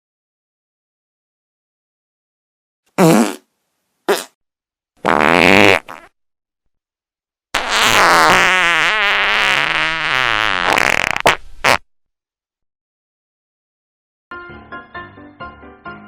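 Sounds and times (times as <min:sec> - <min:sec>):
fart sound effects: 0:03.0 - 0:03.5, 0:04.1 - 0:04.4, 0:05.0 - 0:06.2, 0:07.6 - 0:11.8.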